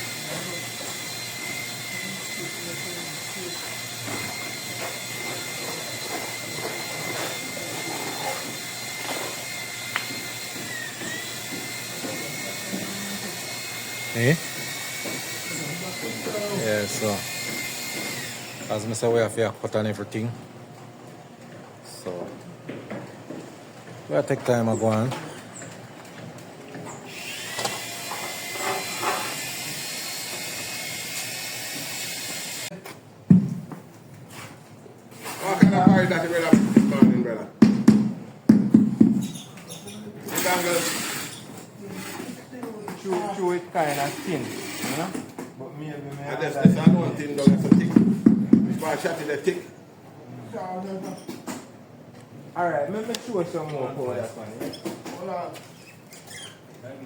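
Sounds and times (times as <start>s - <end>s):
tile saw whining: 0.2s - 18.8s, 27.1s - 32.7s.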